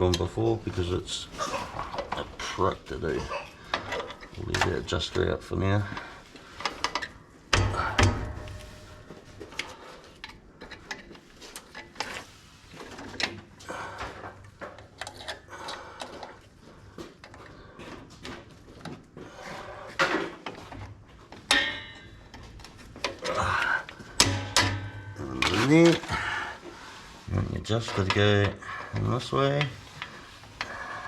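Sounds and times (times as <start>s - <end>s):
metal clicks and knocks: 5.9s - 12.2s, 20.0s - 26.1s.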